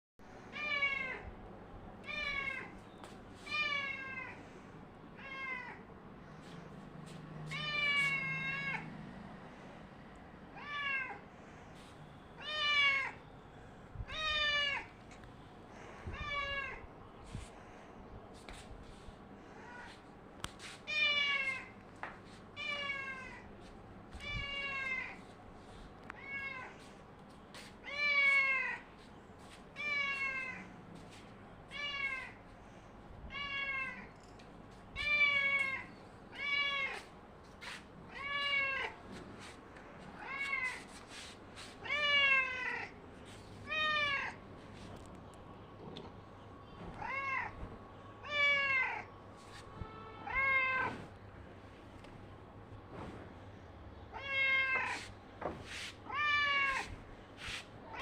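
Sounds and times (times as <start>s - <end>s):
cat meowing: 2.0s - 2.8s, 3.4s - 4.4s, 5.2s - 5.9s, 7.4s - 8.9s, 10.5s - 11.2s, 12.4s - 13.2s, 26.1s - 26.8s, 41.8s - 43.0s, 47.0s - 47.6s, 48.2s - 49.1s.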